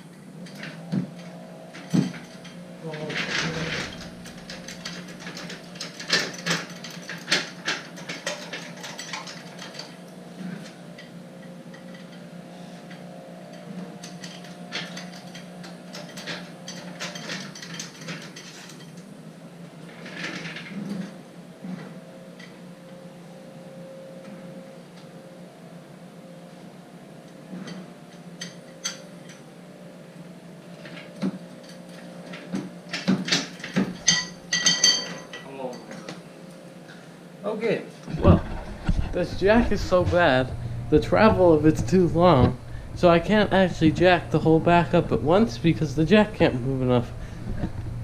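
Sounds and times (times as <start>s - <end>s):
steady low hum: 0.0s - 20.0s, 20.6s - 48.0s
car jack clicking and clanking: 0.5s - 10.0s, 14.0s - 19.0s, 30.8s - 35.5s.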